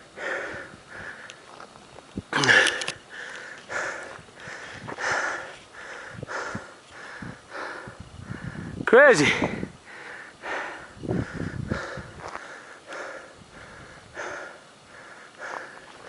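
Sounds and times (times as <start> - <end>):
person breathing hard: 0.1 - 1.4, 2.4 - 8.8, 9.4 - 16.0
voiced sighing breath: 9.4 - 16.0.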